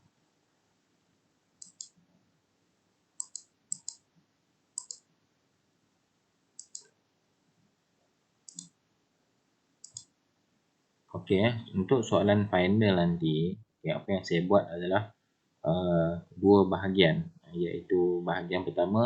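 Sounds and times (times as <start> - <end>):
computer mouse clicking: 1.6 - 2.0, 3.2 - 4.1, 4.8 - 5.1, 6.6 - 6.9, 8.5 - 8.8, 9.8 - 10.1.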